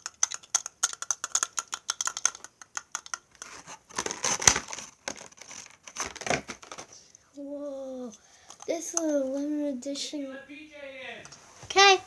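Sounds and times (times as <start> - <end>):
quick small clicks and taps: 0.0 - 3.2
packaging rustling and crinkling: 3.4 - 6.9.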